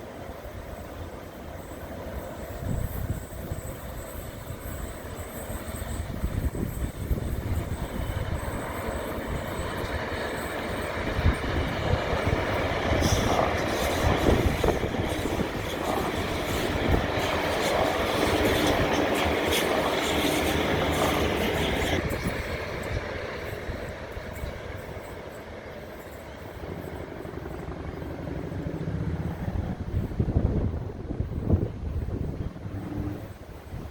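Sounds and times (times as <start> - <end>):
train wheels rumbling on rail: 0.0 - 33.9
clicks of train wheels: 3.5 - 26.7.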